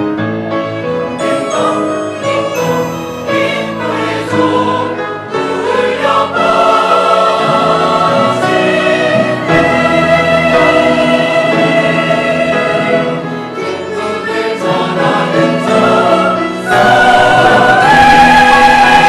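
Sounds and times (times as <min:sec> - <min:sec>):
church choir singing: 0:01.1 - 0:19.0.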